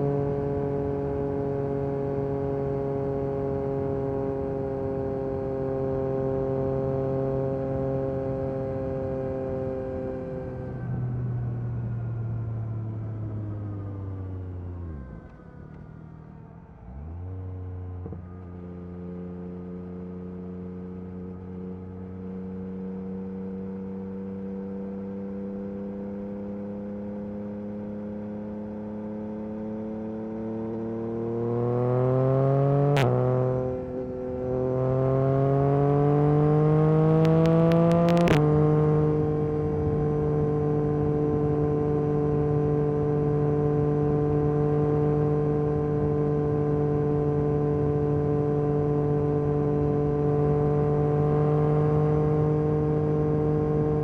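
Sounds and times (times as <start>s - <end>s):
motorcycle engine revving: 17.0s - 54.0s.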